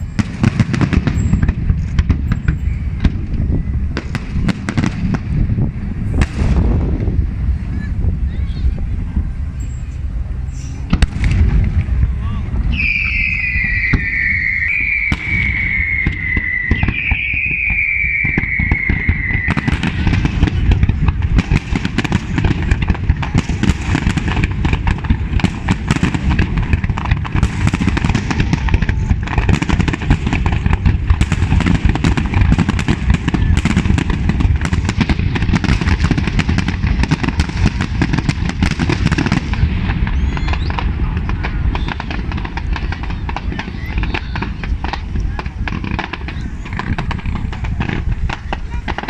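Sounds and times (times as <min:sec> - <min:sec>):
firework shell bursts and crackle: 0:00.0 - 0:07.4, 0:09.6 - 0:49.0
low rumble: 0:01.2 - 0:16.8
falling firework whistle: 0:09.7 - 0:22.8, 0:27.3 - 0:44.7.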